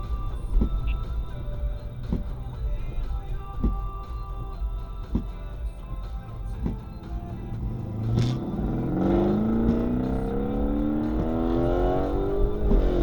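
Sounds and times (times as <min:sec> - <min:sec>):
exhaust pop: 0:00.0 - 0:13.0
car engine accelerating: 0:06.5 - 0:13.0.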